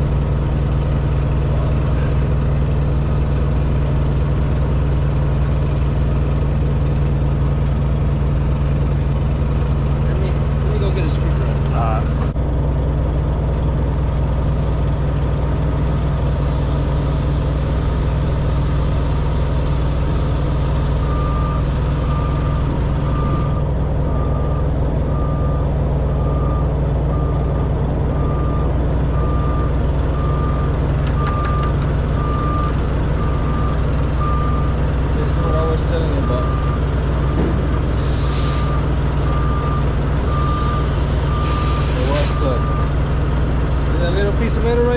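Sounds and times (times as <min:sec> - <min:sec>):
heavy vehicle engine running: 0:00.0 - 0:44.9
backup alarm beeping: 0:20.4 - 0:25.6, 0:38.5 - 0:43.0.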